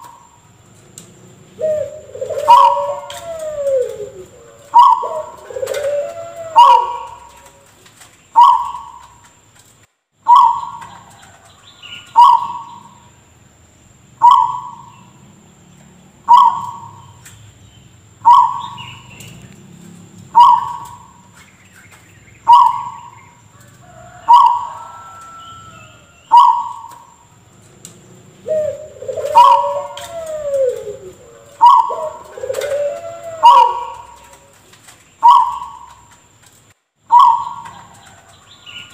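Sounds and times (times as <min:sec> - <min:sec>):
dove cooing: 0:00.0 - 0:09.3, 0:10.3 - 0:13.1, 0:14.2 - 0:15.2, 0:16.2 - 0:17.2, 0:18.2 - 0:21.4, 0:22.4 - 0:36.4, 0:37.1 - 0:38.9
dove cough-like call: 0:28.5 - 0:34.3.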